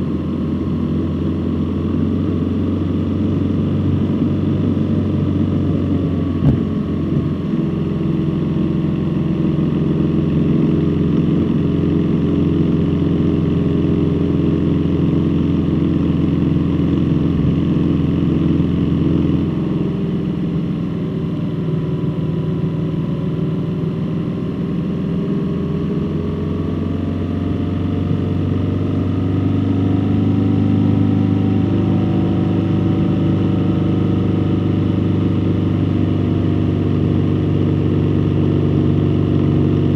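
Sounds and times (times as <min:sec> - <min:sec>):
vehicle engine running: 0:00.0 - 0:39.9
brief knock: 0:06.4 - 0:06.7.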